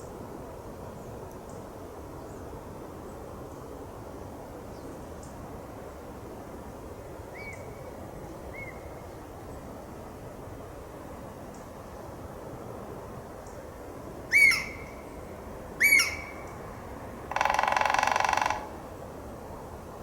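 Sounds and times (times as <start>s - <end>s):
bird whistled notes: 14.3s - 15.0s, 15.8s - 16.5s
wild birds calling: 14.3s - 15.2s, 15.8s - 16.7s, 17.3s - 18.8s.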